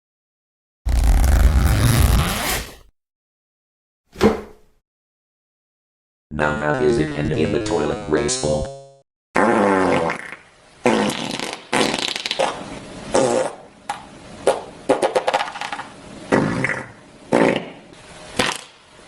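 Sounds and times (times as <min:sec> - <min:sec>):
farts: 0:00.9 - 0:02.9, 0:09.4 - 0:13.7, 0:14.4 - 0:17.8, 0:18.4 - 0:18.8.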